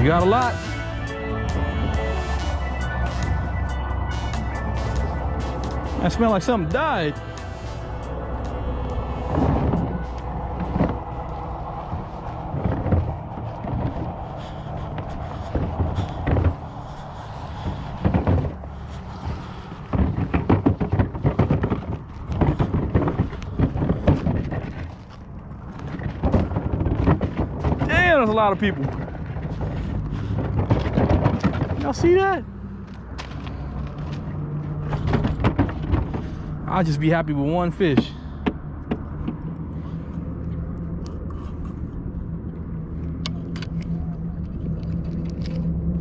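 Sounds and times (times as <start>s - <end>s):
footsteps crunching: 0.0s - 36.5s
engine droning: 0.0s - 46.0s
steady low rumble: 0.0s - 46.0s.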